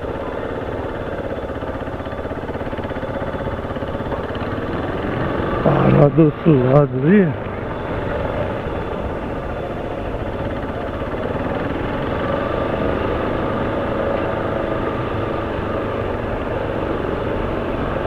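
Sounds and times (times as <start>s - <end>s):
motorcycle engine running: 0.0s - 18.0s
road noise: 0.0s - 18.0s.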